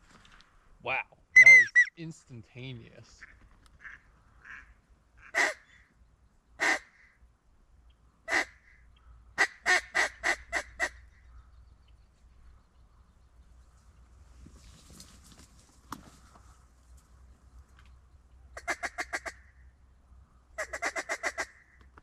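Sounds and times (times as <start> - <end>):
duck quacking: 1.4 - 1.9, 3.2 - 5.6.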